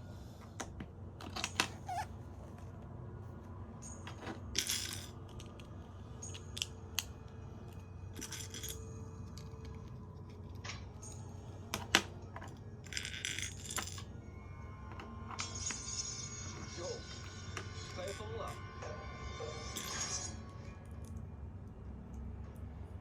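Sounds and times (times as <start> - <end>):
plastic pieces rattling: 8.1 - 10.5, 11.8 - 14.1.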